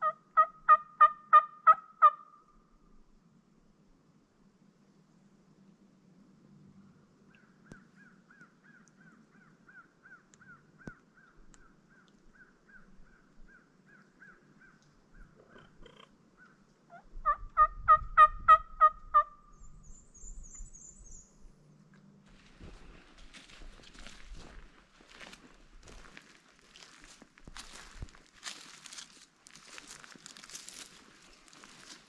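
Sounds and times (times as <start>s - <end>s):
wild turkey gobbling: 0.0s - 2.4s, 9.7s - 19.5s
bird chirping: 7.3s - 17.1s, 19.3s - 21.5s.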